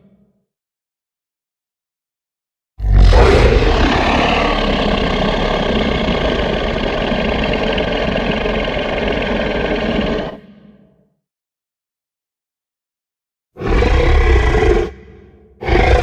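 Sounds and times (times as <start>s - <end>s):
loud steady monster rumbling: 2.8s - 10.9s, 13.6s - 16.0s.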